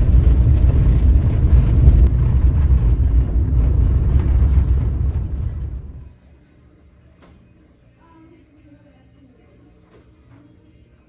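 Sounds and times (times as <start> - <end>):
vehicle engine and road rumble: 0.0 - 6.1.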